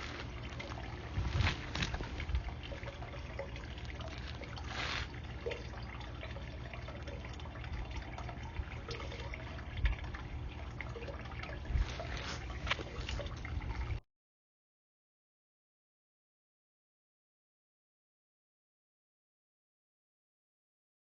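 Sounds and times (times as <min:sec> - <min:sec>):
steady low rumble: 0:00.0 - 0:14.0
water trickling and dripping: 0:00.0 - 0:14.0.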